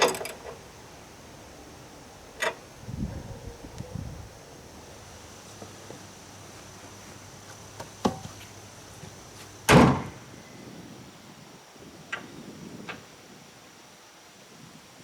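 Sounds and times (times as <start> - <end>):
loud slam-like bang: 9.7 - 10.2.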